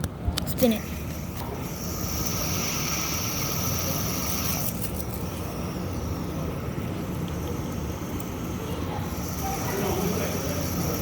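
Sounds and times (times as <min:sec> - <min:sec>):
fidget spinner whirring: 0:00.0 - 0:11.0.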